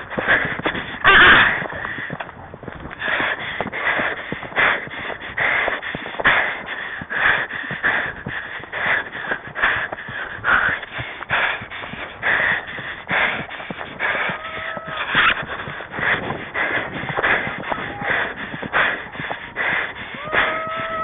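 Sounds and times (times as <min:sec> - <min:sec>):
person panting hard: 0:00.0 - 0:21.0.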